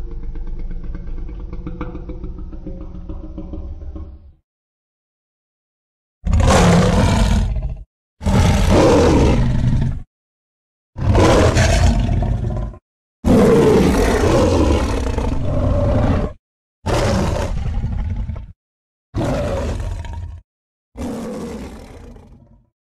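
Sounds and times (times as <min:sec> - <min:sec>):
monster roars: 0:06.3 - 0:10.1, 0:11.0 - 0:18.6, 0:19.2 - 0:20.4.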